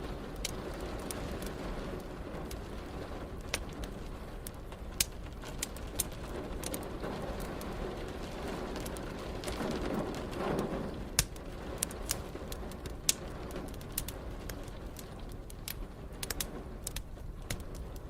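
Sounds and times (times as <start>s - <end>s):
rain hissing: 0.0s - 16.8s
wood fire crackling and popping: 0.0s - 18.0s.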